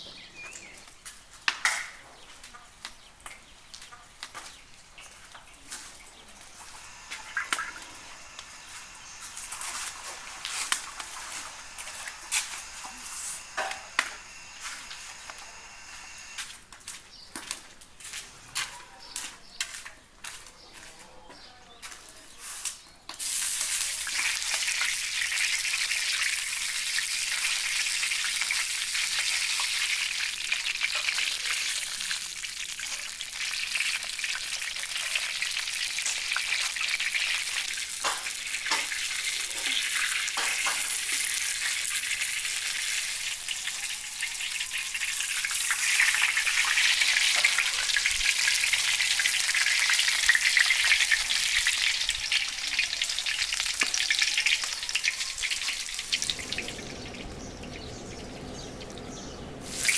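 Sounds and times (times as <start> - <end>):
food sizzling in hot oil: 6.0 - 16.6, 23.2 - 59.9.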